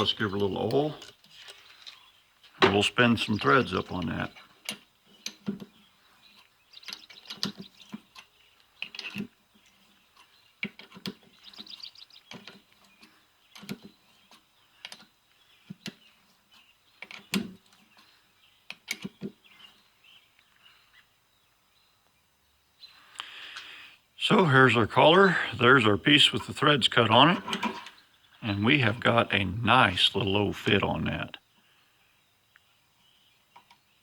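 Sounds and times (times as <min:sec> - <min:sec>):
threading die clicking on metal: 0:18.7 - 0:19.2.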